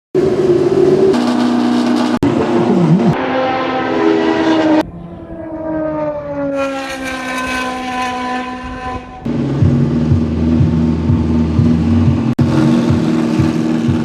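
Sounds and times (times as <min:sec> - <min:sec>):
loud race car engine revving: 0:01.1 - 0:04.8, 0:09.2 - 0:14.0.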